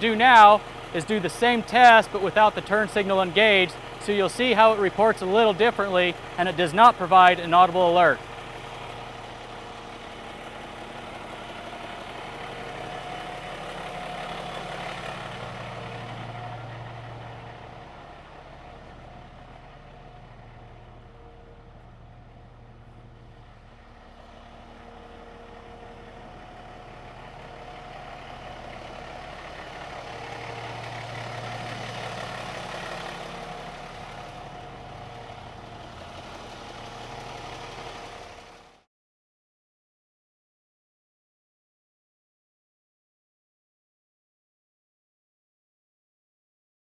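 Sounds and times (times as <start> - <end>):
truck engine idling: 0.0 - 38.9.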